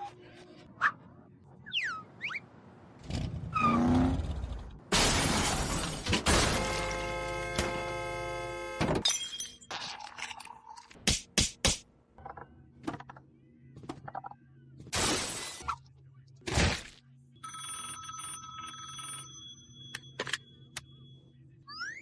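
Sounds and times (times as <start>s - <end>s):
loud crash with breaking: 4.9s - 6.8s
steady ringing tone: 17.4s - 21.6s.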